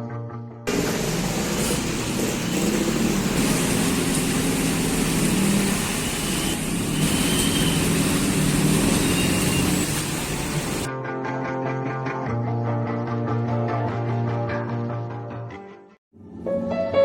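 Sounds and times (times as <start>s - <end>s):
heavy rain pouring: 0.7s - 10.9s
vehicle engines running: 0.7s - 10.9s.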